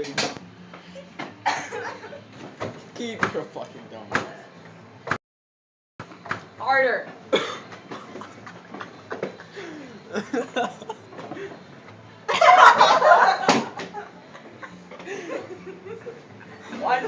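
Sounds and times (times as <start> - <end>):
people laughing and snickering: 0.9 - 2.3, 7.9 - 11.6, 12.3 - 17.0.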